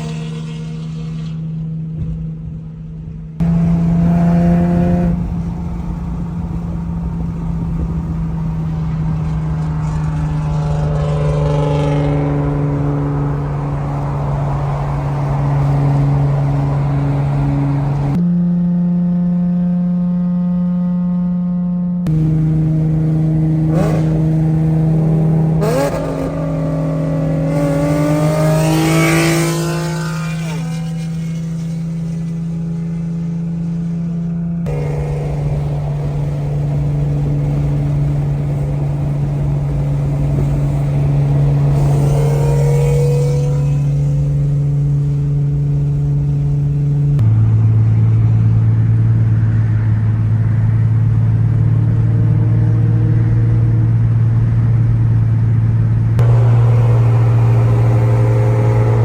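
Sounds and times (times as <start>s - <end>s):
loud raspy car exhaust revving: 3.4s - 18.2s, 22.1s - 47.6s, 56.2s - 59.0s.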